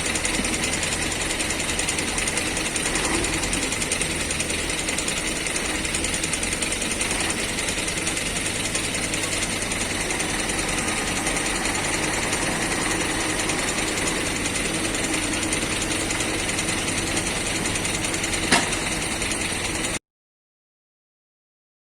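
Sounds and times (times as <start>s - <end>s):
diesel machinery engine clattering: 0.0s - 20.0s.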